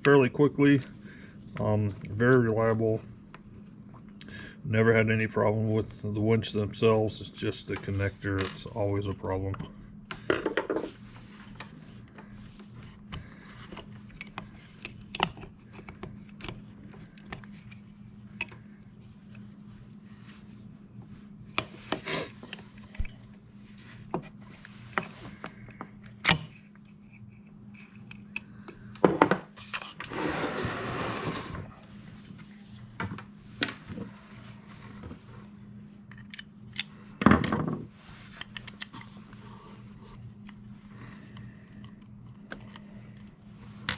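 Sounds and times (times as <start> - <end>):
steady low hum: 0.0 - 43.9
scraping rub: 29.6 - 31.6.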